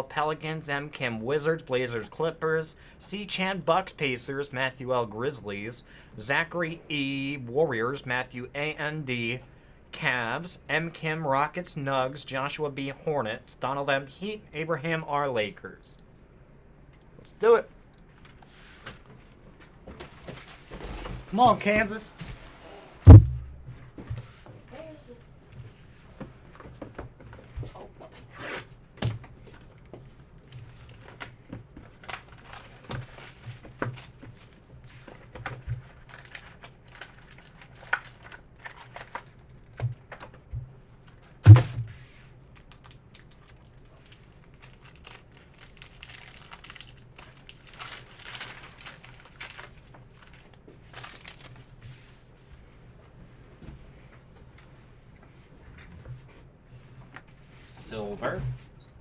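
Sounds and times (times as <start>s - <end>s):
plastic wrappers crinkling: 20.0s - 21.3s, 30.8s - 35.2s, 35.8s - 39.6s, 42.5s - 51.7s
sharp knock: 23.1s - 23.8s, 41.5s - 41.8s.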